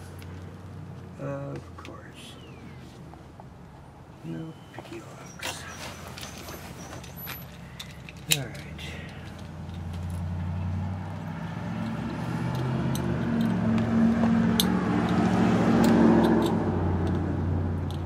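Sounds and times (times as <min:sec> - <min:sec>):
vehicle engine running: 0:08.7 - 0:18.0.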